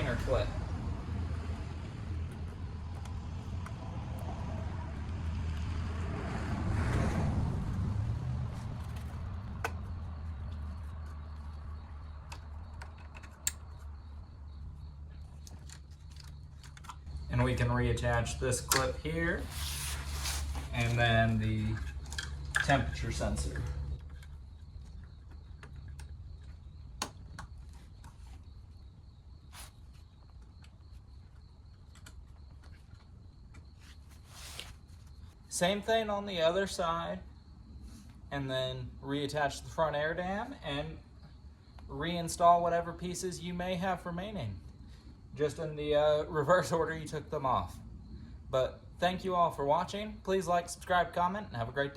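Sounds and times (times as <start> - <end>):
low steady rumble: 0.0 - 29.2
low steady hum: 0.0 - 36.8
soft rustles: 19.4 - 21.2, 32.6 - 35.4.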